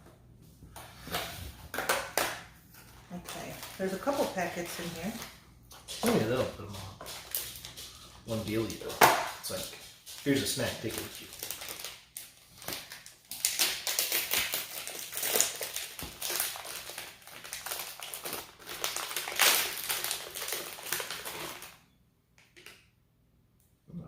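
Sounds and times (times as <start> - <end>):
foil wrapper crinkling: 3.0 - 21.8.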